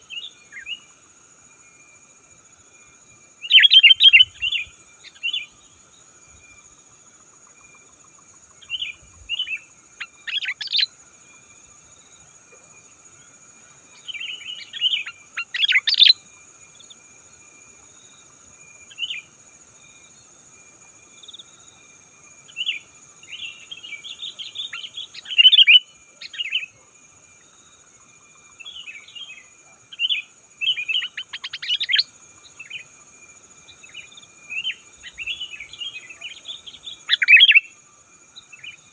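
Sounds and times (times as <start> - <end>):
bird singing bubbly chirps: 3.4 - 5.5, 8.6 - 10.9, 14.0 - 16.2, 22.6 - 26.7, 28.6 - 32.8, 33.8 - 37.7.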